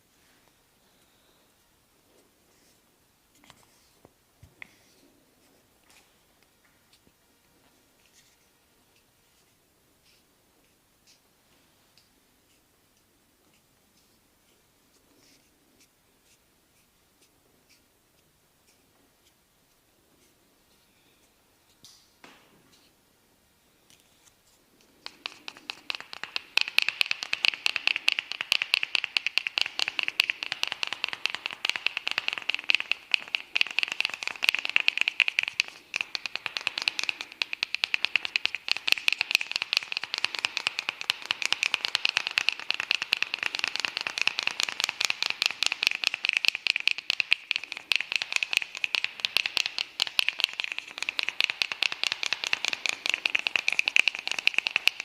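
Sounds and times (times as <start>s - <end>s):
hair crackling clicks: 25.0s - 55.0s.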